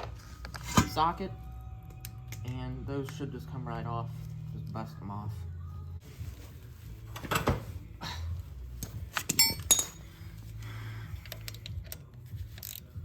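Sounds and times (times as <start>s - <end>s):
socket and wrench clinking: 8.8s - 10.1s, 11.2s - 13.0s.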